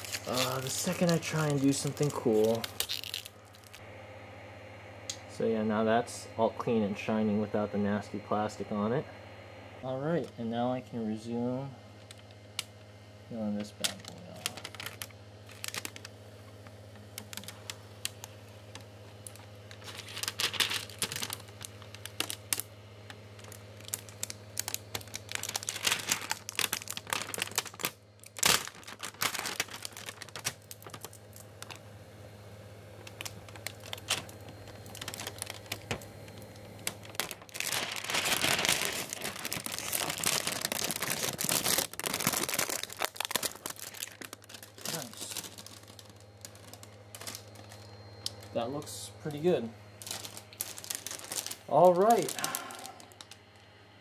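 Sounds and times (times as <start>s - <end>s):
plastic film snapping: 0.0s - 3.8s, 13.7s - 31.8s, 33.0s - 48.5s, 50.0s - 53.7s
plastic film crackling: 0.0s - 3.9s, 12.0s - 12.9s, 13.5s - 31.9s, 33.0s - 48.6s, 50.0s - 53.7s
low steady hum: 0.0s - 54.0s.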